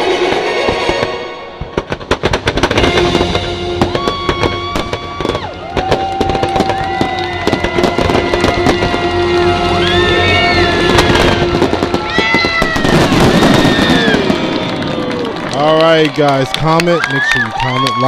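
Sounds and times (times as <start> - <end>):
fireworks crackling and popping: 0.0 - 18.0
show music with held notes: 2.6 - 13.1.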